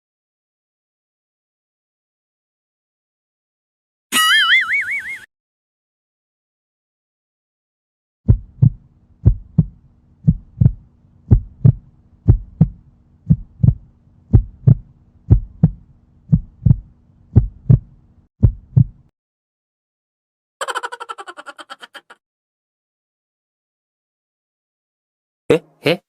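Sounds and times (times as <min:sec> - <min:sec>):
heartbeat double thump: 0:08.3 - 0:19.1
steady low hum: 0:08.3 - 0:19.1.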